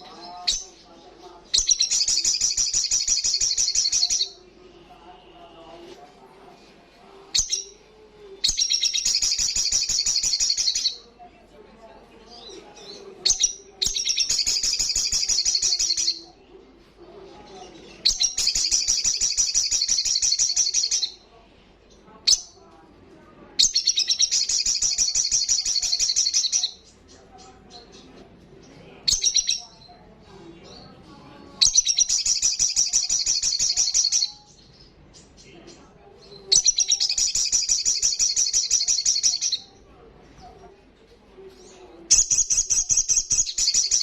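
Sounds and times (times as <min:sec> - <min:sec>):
bird trilling song: 0:00.0 - 0:04.4, 0:07.3 - 0:11.0, 0:12.3 - 0:16.3, 0:17.7 - 0:21.2, 0:23.6 - 0:28.2, 0:29.0 - 0:29.9, 0:31.6 - 0:35.6, 0:36.2 - 0:39.8, 0:41.6 - 0:44.0.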